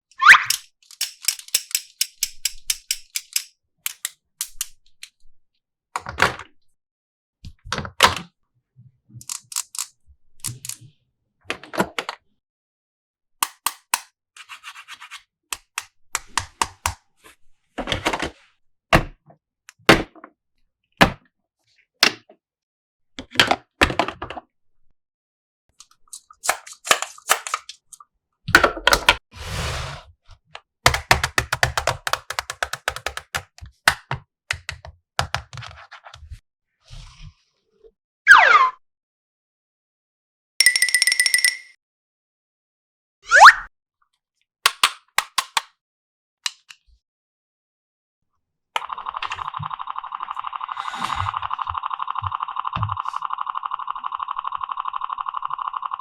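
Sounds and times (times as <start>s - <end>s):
plastic toy pieces clicking: 0.2s - 4.8s, 9.2s - 10.8s, 30.9s - 33.7s, 44.7s - 45.7s.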